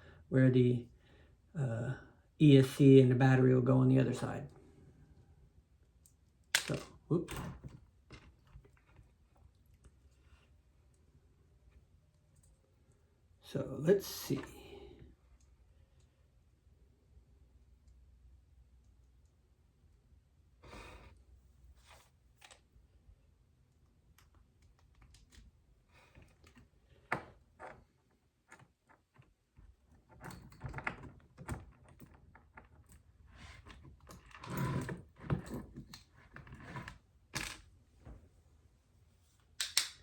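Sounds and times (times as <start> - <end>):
handling small parts: 6.0 - 9.9.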